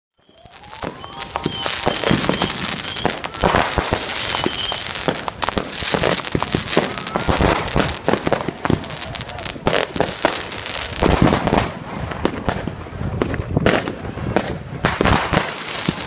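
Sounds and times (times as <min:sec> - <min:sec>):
firework whistle: 0:00.1 - 0:10.8
firecrackers banging: 0:00.2 - 0:16.0
fireworks crackling: 0:00.2 - 0:16.0.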